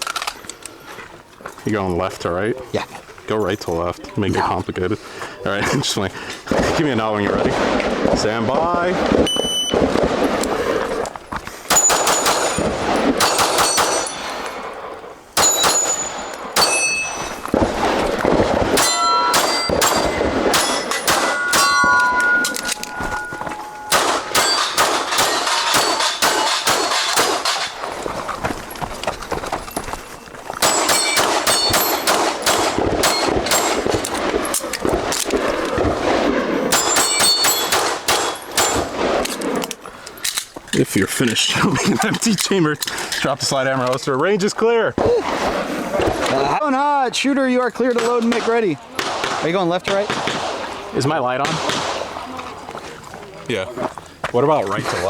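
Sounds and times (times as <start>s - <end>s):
steel targets clanging: 11.7s - 14.6s, 15.4s - 17.6s, 18.7s - 28.0s, 29.6s - 34.6s, 36.7s - 39.9s
pistol shots: 11.7s - 14.7s, 15.4s - 27.9s, 30.6s - 39.6s, 48.0s - 50.7s, 51.4s - 52.1s.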